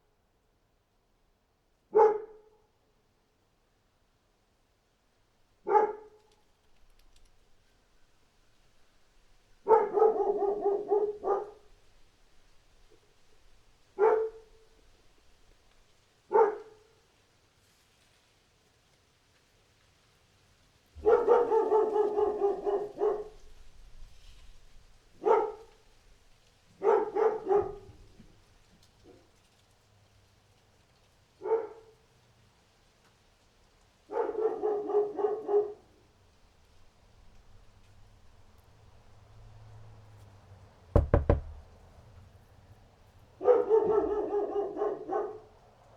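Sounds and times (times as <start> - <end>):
dog barking: 1.9 - 2.7, 5.6 - 6.3, 9.6 - 11.8, 14.0 - 14.8, 16.3 - 17.0, 21.0 - 23.6, 25.2 - 25.8, 26.8 - 28.2, 31.4 - 32.0, 34.1 - 36.0, 43.4 - 45.6.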